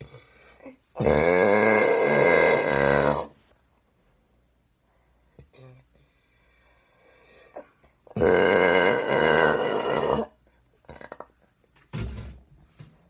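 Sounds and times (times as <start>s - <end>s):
woman burping: 1.0s - 3.3s, 7.6s - 10.3s.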